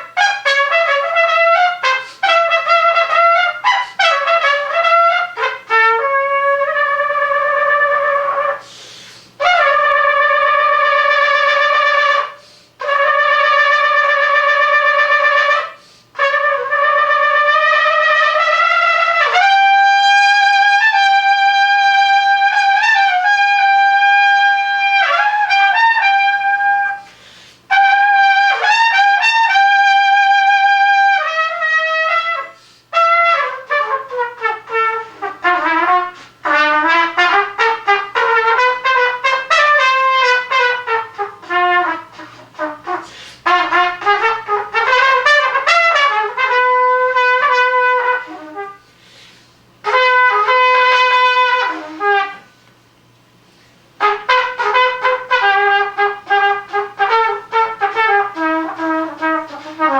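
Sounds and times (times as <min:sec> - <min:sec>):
solo brass wind instrument: 0:00.0 - 0:49.0, 0:49.6 - 0:52.6, 0:53.9 - 0:59.9
player breathing: 0:08.6 - 0:09.4, 0:27.0 - 0:27.7, 0:32.6 - 0:32.9, 0:43.0 - 0:43.4, 0:48.8 - 0:49.6.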